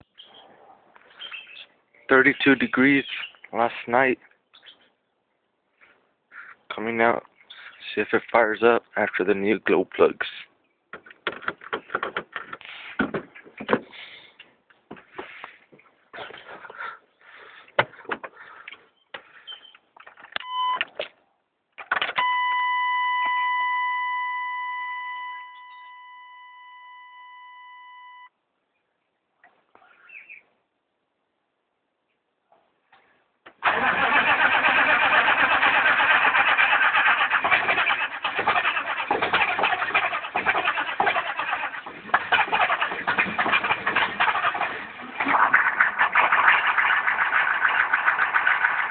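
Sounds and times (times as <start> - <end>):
clicks and knocks: 10.9 - 13.9
diesel engine cranking: 33.5 - 48.9.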